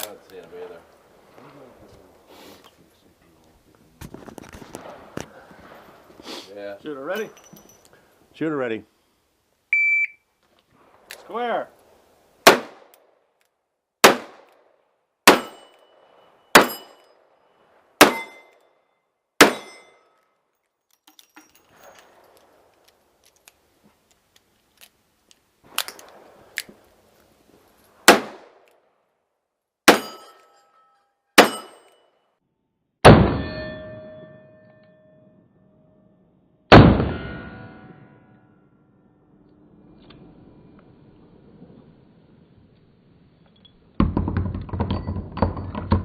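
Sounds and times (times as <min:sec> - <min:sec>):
gunshots: 0:04.7 - 0:06.0, 0:12.4 - 0:12.9, 0:14.0 - 0:14.5, 0:15.2 - 0:15.7, 0:16.5 - 0:17.0, 0:19.4 - 0:19.8, 0:28.0 - 0:28.6, 0:31.4 - 0:31.8, 0:33.0 - 0:33.8, 0:36.7 - 0:37.9
steel target ringing: 0:15.3 - 0:17.2, 0:18.0 - 0:18.6, 0:19.4 - 0:20.1, 0:29.9 - 0:31.9, 0:33.1 - 0:35.4, 0:36.8 - 0:39.3.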